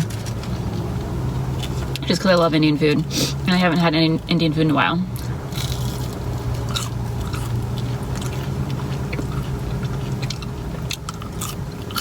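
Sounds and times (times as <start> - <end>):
steady low hum: 0.0 - 12.0
chewing and biting food: 5.1 - 12.0
small crunches and mouth clicks: 5.1 - 12.0.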